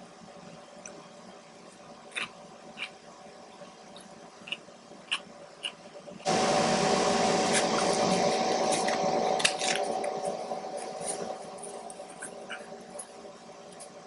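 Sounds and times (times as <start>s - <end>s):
loud whirring with hum: 0.0s - 14.0s.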